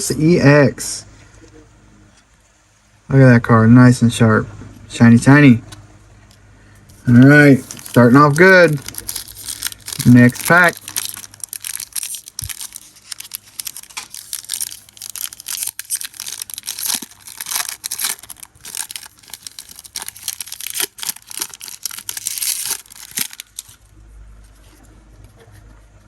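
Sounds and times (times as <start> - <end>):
foil wrapper crackling: 7.0 - 23.9.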